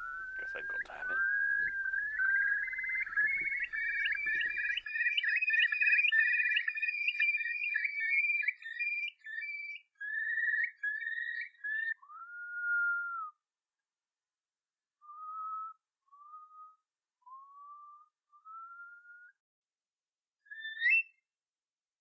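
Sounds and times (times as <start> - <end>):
person whistling a tune: 0.0 - 4.7.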